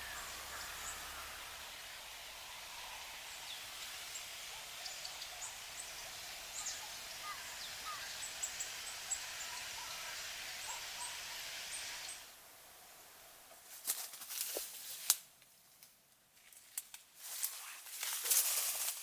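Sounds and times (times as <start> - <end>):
small birds chirping: 0.0 - 12.3
steady woodland hiss: 0.0 - 15.7.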